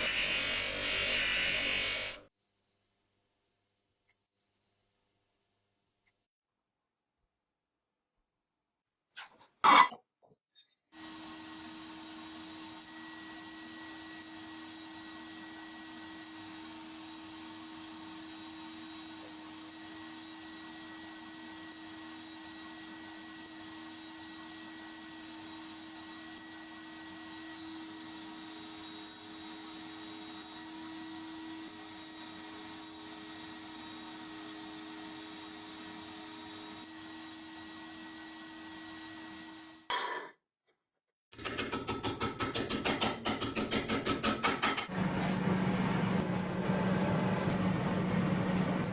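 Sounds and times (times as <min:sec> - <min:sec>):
machine motor hissing and whining: 0:00.0 - 0:02.3.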